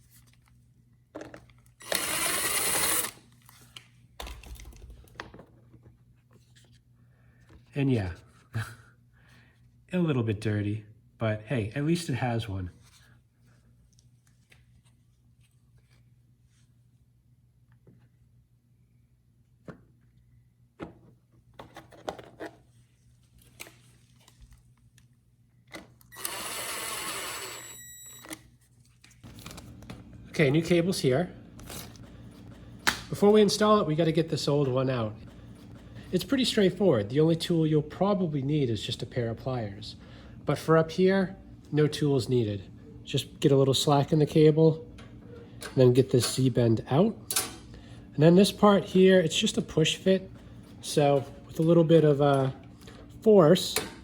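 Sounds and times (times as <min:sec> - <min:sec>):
power tool mechanical burst: 0:01.8 - 0:03.2.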